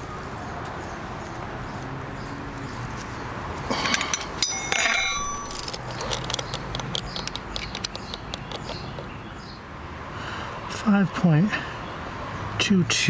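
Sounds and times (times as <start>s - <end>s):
metal hand tools clinking: 3.7s - 8.2s
ringing metal clank: 3.8s - 6.1s
small metal clicks and taps: 3.9s - 9.1s.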